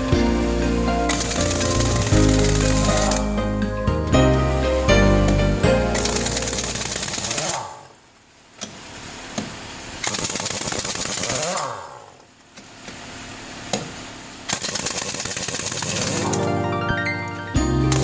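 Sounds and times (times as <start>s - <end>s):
air impact wrench rattling: 1.1s - 3.3s, 6.0s - 8.0s, 10.0s - 12.3s, 14.5s - 16.4s.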